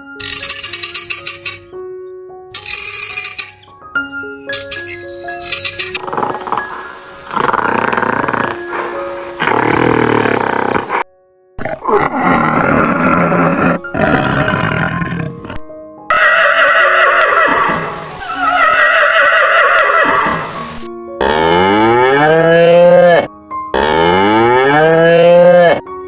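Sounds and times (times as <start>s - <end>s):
background music: 0.0s - 26.0s
farm animal calls: 0.2s - 1.8s, 4.5s - 7.4s, 16.1s - 20.6s.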